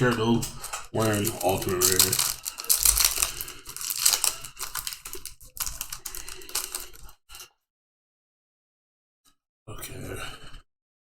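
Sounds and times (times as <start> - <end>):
foil wrapper crinkling: 0.0 - 7.1
trading cards clicking: 0.4 - 7.0.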